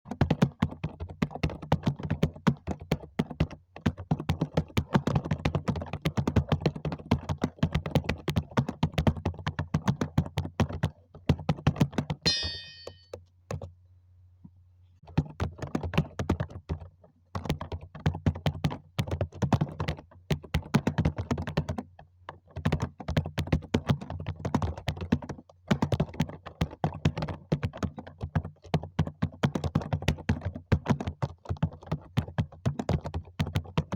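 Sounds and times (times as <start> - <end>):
high-pitched blip: 12.3 - 13.1.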